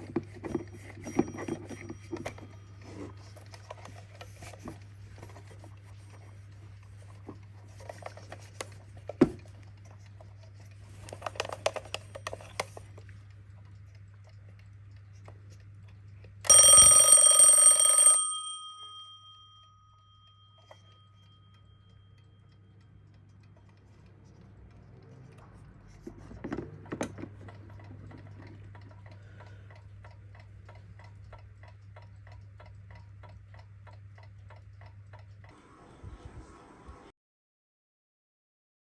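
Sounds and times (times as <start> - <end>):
alarm clock bells ringing: 16.5 - 22.9
clock ticking: 20.2 - 35.5.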